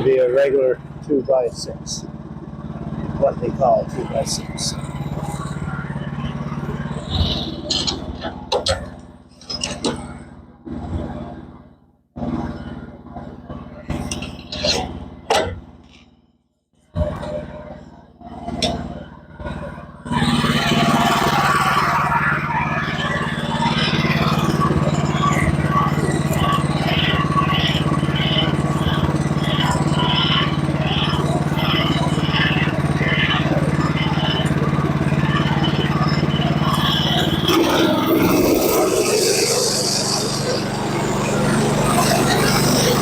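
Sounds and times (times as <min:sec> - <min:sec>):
sawmill blade cutting wood: 0:03.2 - 0:10.1, 0:20.1 - 0:43.0.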